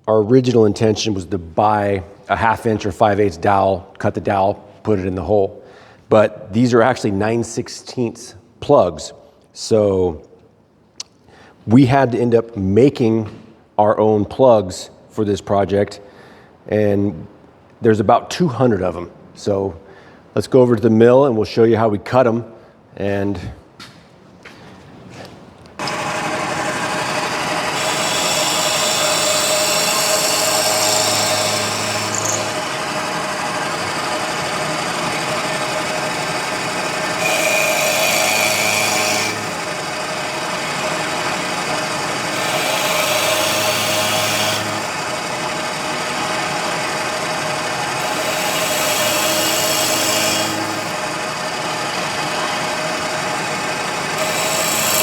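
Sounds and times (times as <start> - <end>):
milling machine hum: 25.8 - 55.0
plug cutter cutting wood: 25.8 - 55.0.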